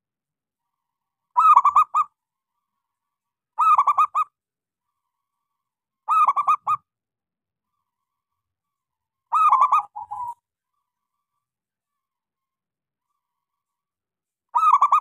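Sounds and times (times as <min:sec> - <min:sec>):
dove cooing: 0:09.3 - 0:10.4.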